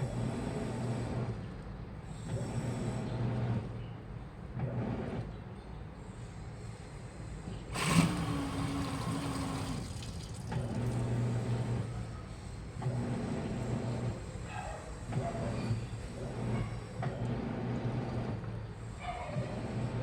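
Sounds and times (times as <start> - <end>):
washing machine motor hum: 7.7 - 14.4.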